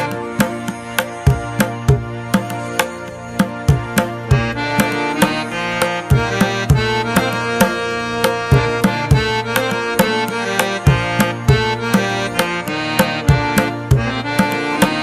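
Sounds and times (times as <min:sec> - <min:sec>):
hand drum beat: 0:00.0 - 0:15.0
sustained melodic tones: 0:00.0 - 0:15.0.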